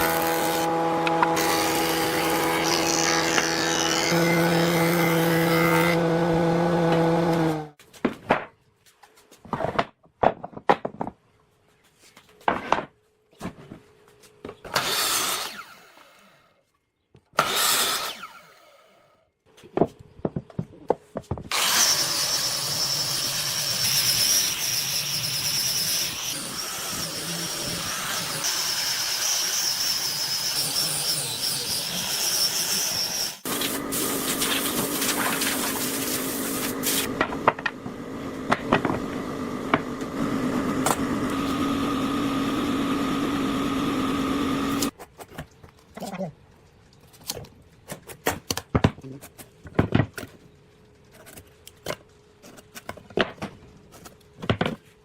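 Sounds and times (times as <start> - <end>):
power tool whining: 0.0 - 7.8, 21.5 - 44.9.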